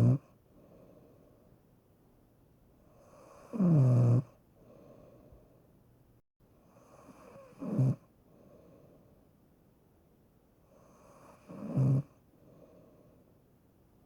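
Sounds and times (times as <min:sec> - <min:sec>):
faint breathing: 0:00.4 - 0:01.7, 0:04.5 - 0:05.8, 0:08.2 - 0:09.4, 0:12.2 - 0:13.4.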